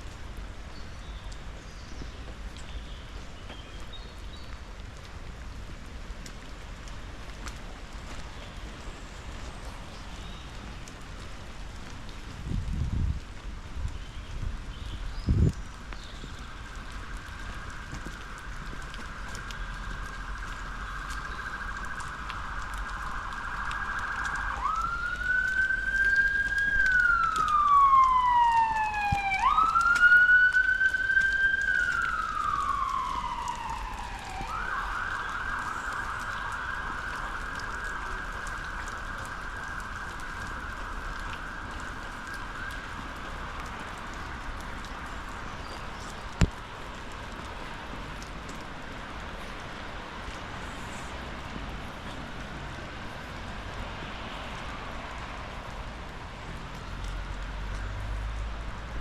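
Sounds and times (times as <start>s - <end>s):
rain: 0.0s - 59.0s
emergency vehicle siren: 15.4s - 59.0s.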